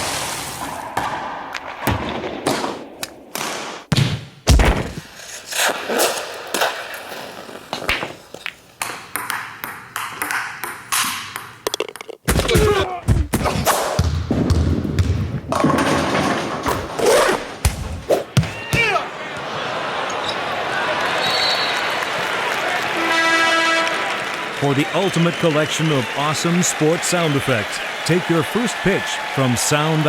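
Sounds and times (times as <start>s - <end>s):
sharp hits and thuds: 1.0s - 5.1s.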